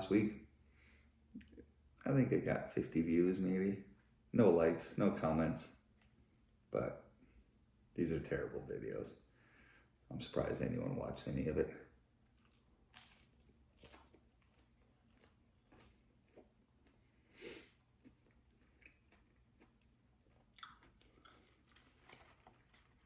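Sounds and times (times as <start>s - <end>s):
person chewing food: 12.2s - 23.0s.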